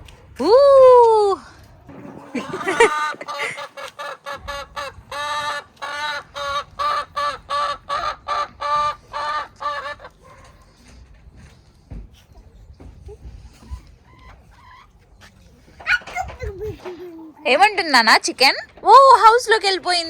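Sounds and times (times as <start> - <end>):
chicken cackling: 2.1 - 10.3.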